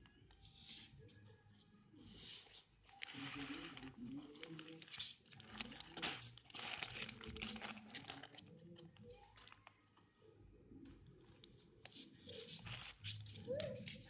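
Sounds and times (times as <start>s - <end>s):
packaging crinkling: 2.4s - 9.8s.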